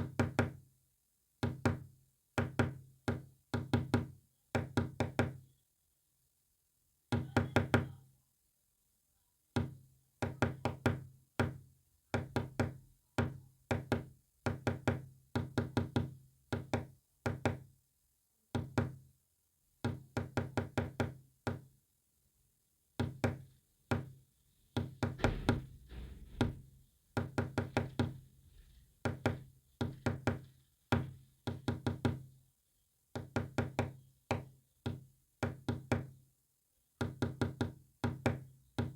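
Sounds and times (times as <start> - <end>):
sharp knocking raps: 24.8 - 28.2.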